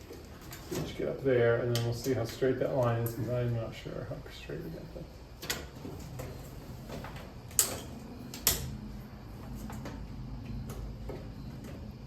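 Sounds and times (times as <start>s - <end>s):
knocks and clicks on a ladder: 5.4s - 8.8s.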